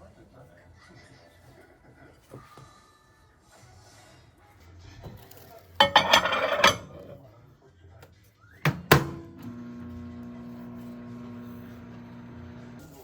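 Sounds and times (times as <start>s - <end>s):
kitchen appliance humming: 5.8s - 7.2s, 8.7s - 13.0s.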